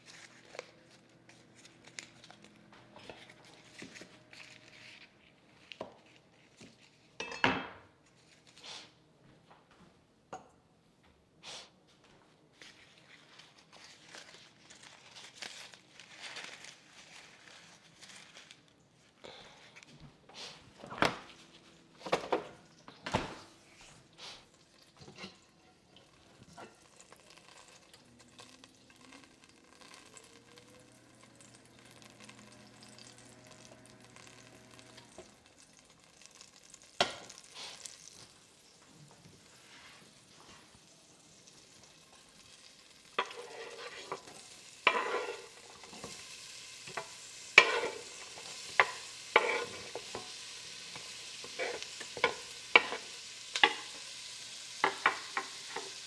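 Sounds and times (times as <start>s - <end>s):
food sizzling in a pan: 23.6s - 56.0s
stirring and scraping: 43.1s - 54.0s, 54.8s - 56.0s.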